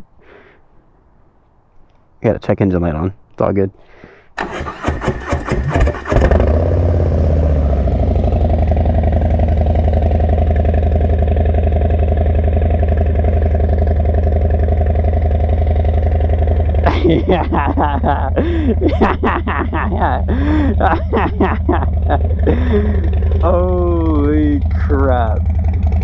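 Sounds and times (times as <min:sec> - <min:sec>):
starter cranking: 0:04.4 - 0:06.6, 0:22.0 - 0:26.0
motorcycle engine revving and idling: 0:04.4 - 0:26.0.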